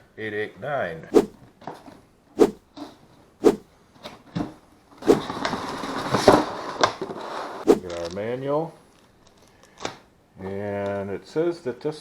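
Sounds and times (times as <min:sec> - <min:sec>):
cardboard rustling and scraping: 0:05.0 - 0:08.2.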